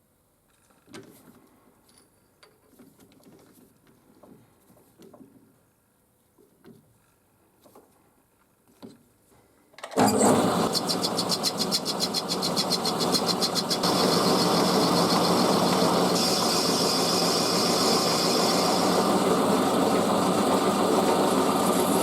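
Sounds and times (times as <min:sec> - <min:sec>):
workshop machine motor running: 0:10.0 - 0:22.0.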